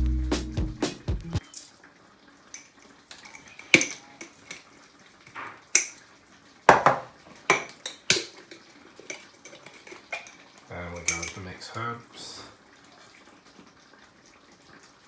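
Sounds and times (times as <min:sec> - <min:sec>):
kitchen utensils clinking: 0:02.5 - 0:04.7, 0:06.7 - 0:11.5.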